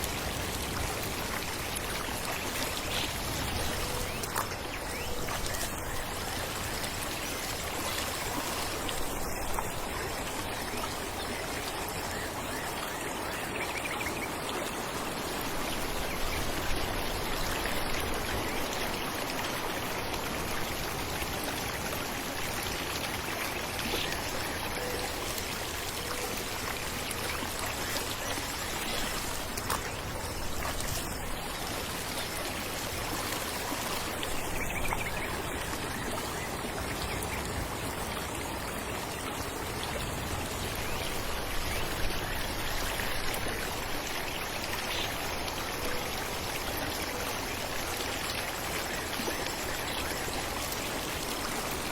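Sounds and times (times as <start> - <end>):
falling water rushing: 0.0 - 51.9.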